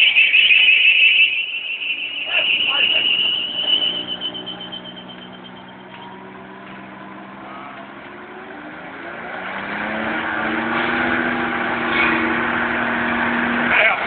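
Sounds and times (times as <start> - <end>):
tyre squeal: 0.0 - 6.3, 11.8 - 12.4
car engine revving: 1.3 - 14.0.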